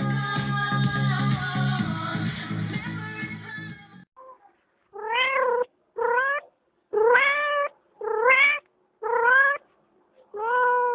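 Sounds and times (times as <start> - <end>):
cat meowing: 5.0 - 9.7, 10.3 - 10.9.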